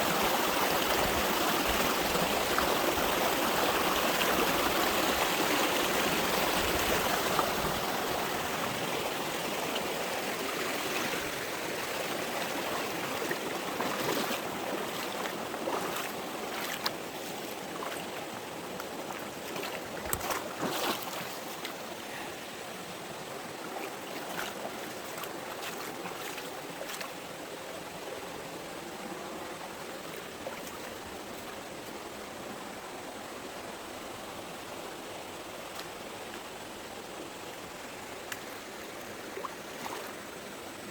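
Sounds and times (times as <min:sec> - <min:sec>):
stream running over rocks: 0:00.0 - 0:40.9
short clicks or splashes: 0:19.6 - 0:21.8.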